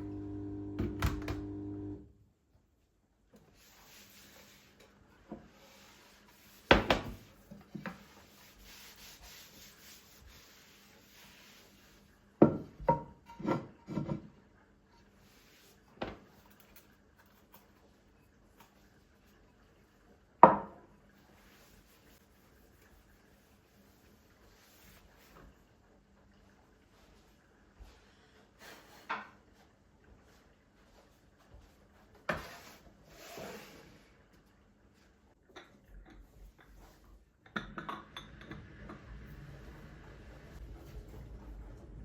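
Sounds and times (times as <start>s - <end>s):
multi-tone hum: 0.0s - 2.0s
soft rubbing hiss: 3.4s - 12.2s, 21.1s - 25.7s.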